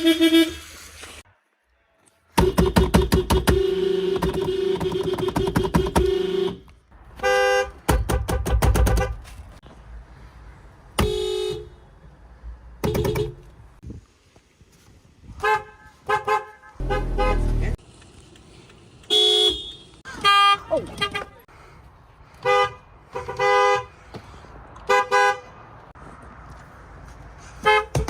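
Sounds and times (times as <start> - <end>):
car horns honking: 0.0 - 0.8, 2.4 - 9.4, 11.0 - 11.9, 12.8 - 13.6, 15.4 - 17.8, 19.1 - 21.5, 22.4 - 23.9, 24.8 - 25.6, 27.6 - 28.0
rapid pulsing car horn beeps: 2.4 - 9.2, 12.8 - 13.5, 15.4 - 17.8, 19.1 - 21.4.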